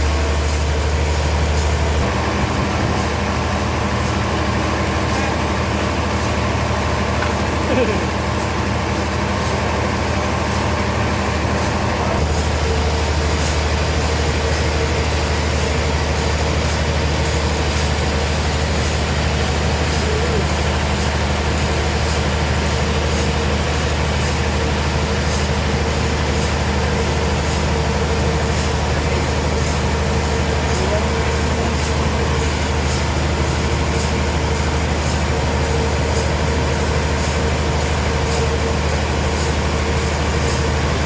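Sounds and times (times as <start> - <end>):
heavy machinery droning: 0.0 - 41.0.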